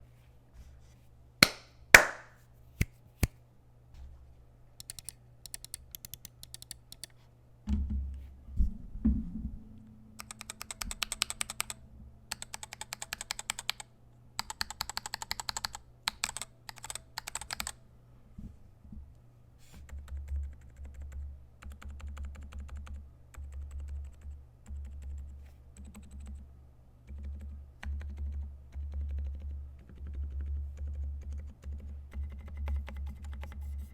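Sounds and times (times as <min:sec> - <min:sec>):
mechanical keyboard typing: 0:04.8 - 0:07.1, 0:10.2 - 0:13.8, 0:14.4 - 0:17.8, 0:19.9 - 0:26.4, 0:27.1 - 0:33.8.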